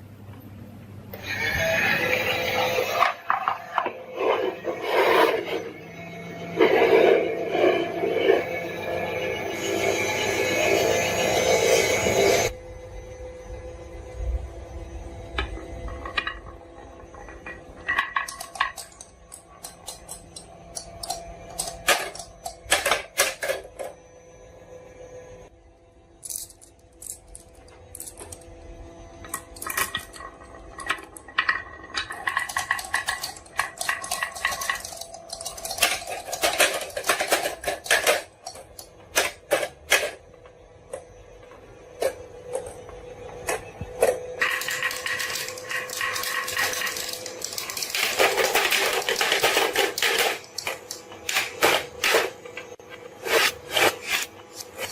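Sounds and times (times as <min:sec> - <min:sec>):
marbles clattering down a track: 0:15.4 - 0:24.0, 0:29.3 - 0:40.2, 0:44.4 - 0:52.4.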